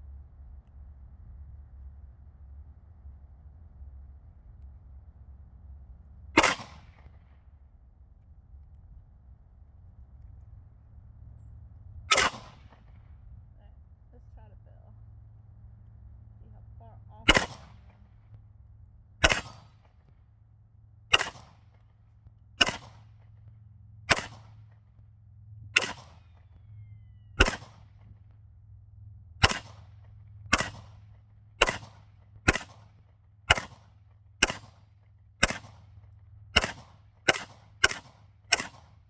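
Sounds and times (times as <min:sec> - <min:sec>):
gun single shots: 0:06.4 - 0:07.1, 0:12.1 - 0:12.9, 0:17.3 - 0:18.0, 0:19.2 - 0:19.9, 0:21.1 - 0:21.6, 0:22.6 - 0:23.0, 0:24.1 - 0:24.5, 0:25.8 - 0:26.2, 0:27.4 - 0:27.9, 0:29.4 - 0:29.9, 0:30.5 - 0:31.0, 0:31.6 - 0:32.9, 0:33.5 - 0:33.8, 0:34.4 - 0:34.8, 0:35.4 - 0:35.8, 0:36.6 - 0:39.0.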